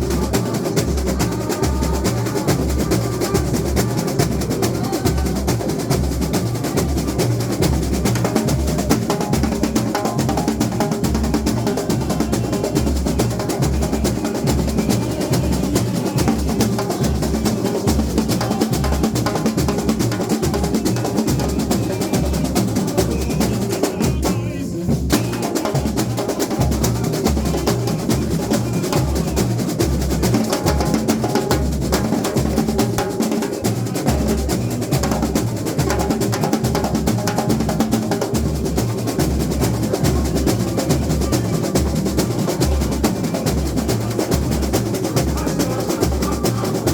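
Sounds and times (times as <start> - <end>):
bass drums beating: 0.0 - 32.8
snare and hand drums: 0.0 - 46.9.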